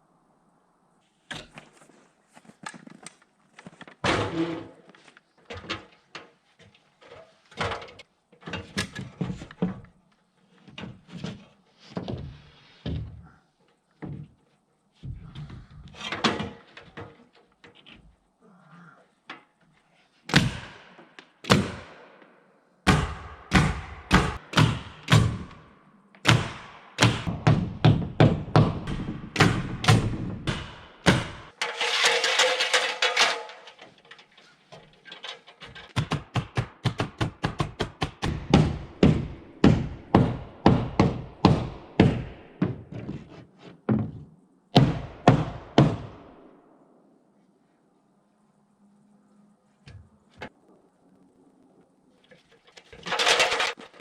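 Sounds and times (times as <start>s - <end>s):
nails hammered into wood: 20.3s - 22.0s, 22.9s - 25.6s, 26.2s - 31.5s, 36.0s - 42.8s, 44.8s - 46.2s.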